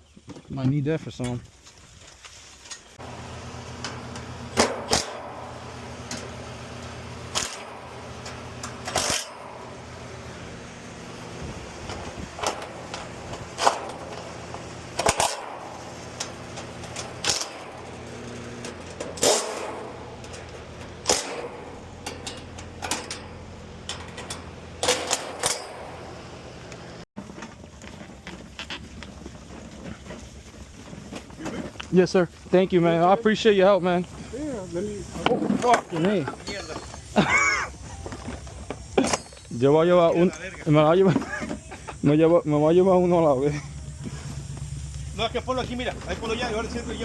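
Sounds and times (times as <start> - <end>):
low machine hum: 3.0 - 28.5, 29.5 - 47.0
tools clanking and knocking: 3.8 - 11.2, 11.8 - 26.2, 40.2 - 42.0.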